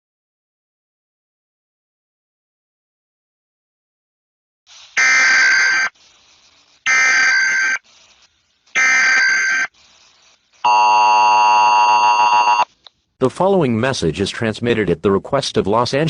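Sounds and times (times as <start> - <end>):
buzzy data tone bursts: 4.9 - 12.7.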